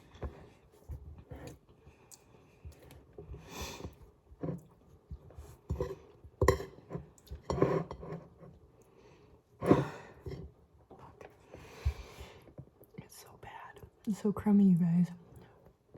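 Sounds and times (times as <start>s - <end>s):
cutlery clinking and scraping on dish: 5.6s - 8.5s.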